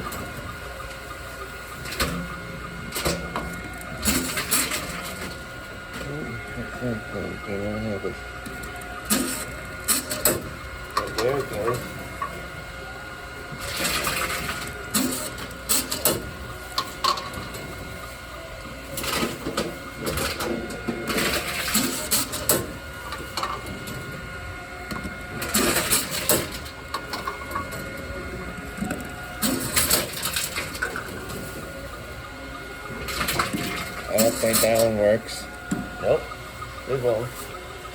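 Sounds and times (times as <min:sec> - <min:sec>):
faint machine hum: 0:00.0 - 0:37.9
bottles rattling and crunching: 0:33.0 - 0:35.4.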